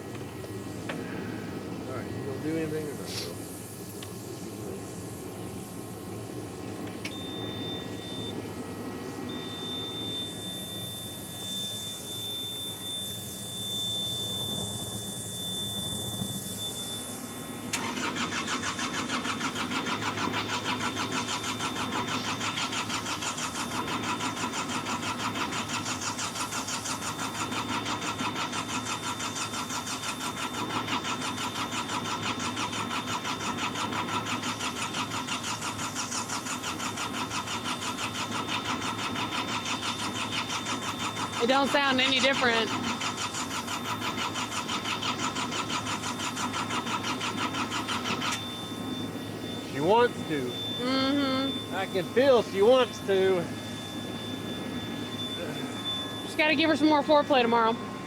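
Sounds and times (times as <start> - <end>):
diesel engine cranking: 17.6 - 57.8
high-pitched tone: 40.8 - 43.4, 47.2 - 58.0.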